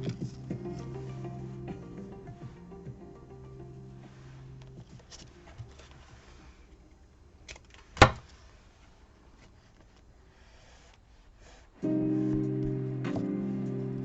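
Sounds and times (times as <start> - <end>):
background music: 0.0 - 5.8, 11.8 - 14.0
paper rustling and handling: 4.6 - 6.8.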